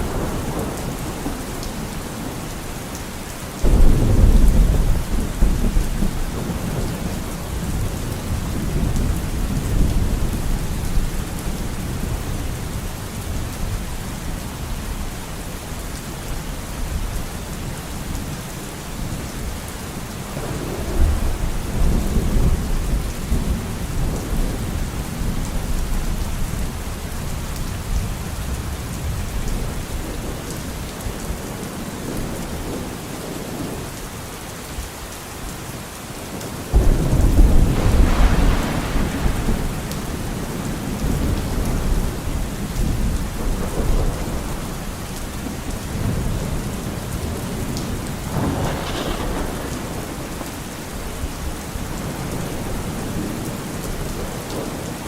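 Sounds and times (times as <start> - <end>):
steady rain falling: 0.0 - 55.0
thunder rumbling: 3.6 - 13.9, 36.7 - 54.9.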